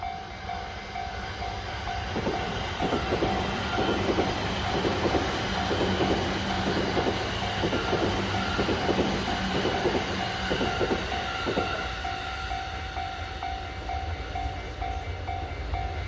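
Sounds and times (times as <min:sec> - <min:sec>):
train wheels clattering over rail joints: 0:02.1 - 0:12.0.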